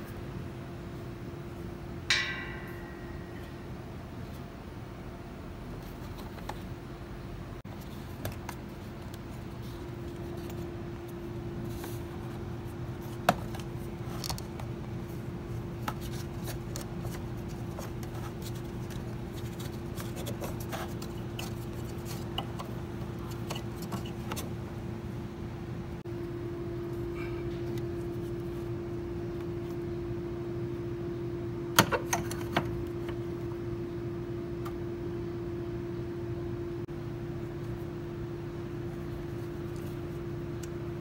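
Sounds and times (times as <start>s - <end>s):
steady hum: 0.0s - 41.0s
steady tone: 2.1s - 4.2s.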